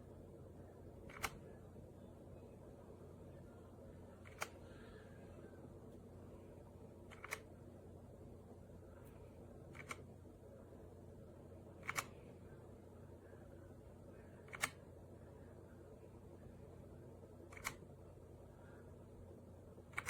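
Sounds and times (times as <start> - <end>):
low steady hum: 0.0 - 20.0
sharp clicks: 1.0 - 1.4, 4.2 - 4.6, 7.1 - 7.5, 9.7 - 10.1, 11.8 - 12.2, 14.4 - 14.8, 17.5 - 17.8.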